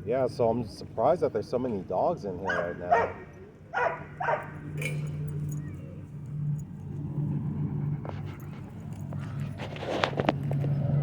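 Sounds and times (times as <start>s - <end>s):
dog barking: 2.5s - 4.6s.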